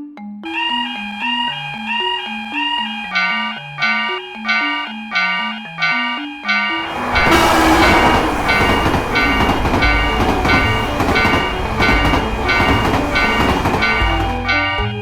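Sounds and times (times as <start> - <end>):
chiming tone: 0.4 - 15.0
train rushing rumble with clatter: 6.7 - 15.0.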